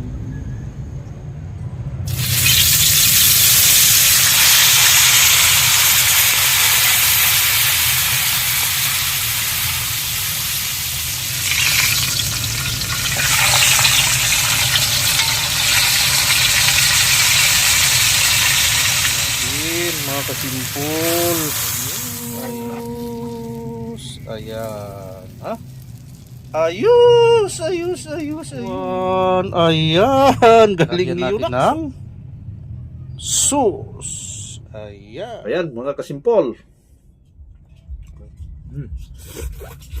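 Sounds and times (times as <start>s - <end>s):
low steady rumble: 1.1s - 40.0s
fish frying in hot oil: 2.1s - 23.4s.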